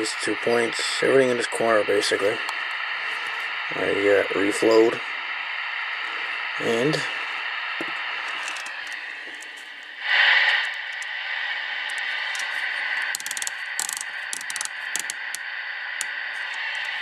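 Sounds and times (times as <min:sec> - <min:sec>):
radio static hiss: 0:00.0 - 0:17.0
sharp clicks and rattles: 0:08.3 - 0:09.9, 0:10.5 - 0:11.2, 0:11.8 - 0:17.0.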